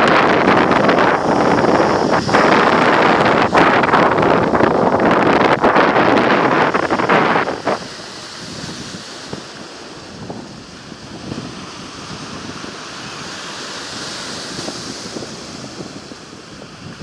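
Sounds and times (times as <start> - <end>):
sea waves washing ashore: 0.0 - 17.0
wind buffeting microphone: 0.0 - 17.0.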